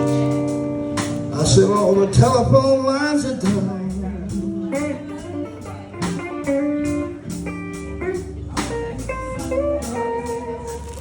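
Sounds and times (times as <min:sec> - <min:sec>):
bass: 0:00.0 - 0:11.0
drums: 0:00.0 - 0:11.0
guitars: 0:00.0 - 0:11.0.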